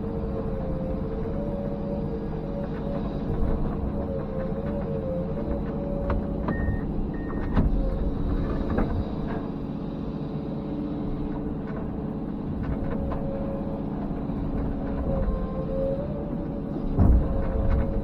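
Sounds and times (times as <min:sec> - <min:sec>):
excavator engine drone: 0:00.0 - 0:18.0.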